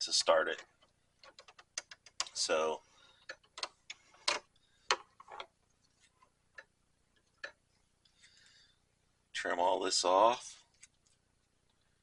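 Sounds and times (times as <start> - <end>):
sharp clicks and taps: 0.6 - 2.4.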